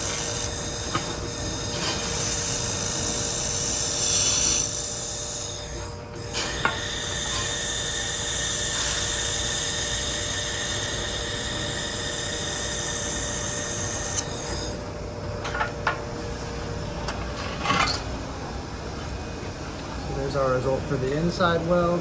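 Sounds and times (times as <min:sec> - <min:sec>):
laser welder hissing and sizzling: 0:00.0 - 0:15.0
machine hum: 0:00.0 - 0:22.0.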